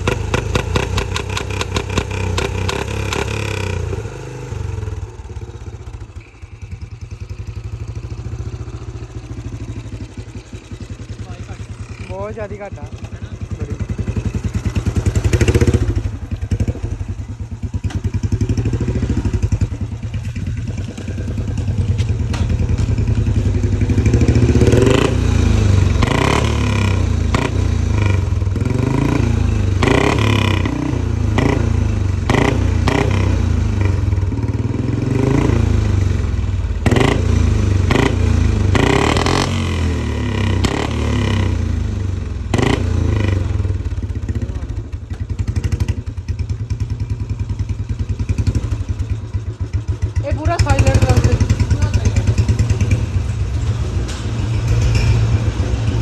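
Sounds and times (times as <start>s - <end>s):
exhaust pops and crackles: 0.0s - 3.4s, 17.8s - 24.9s
motorcycle engine thumping and revving: 0.0s - 56.0s.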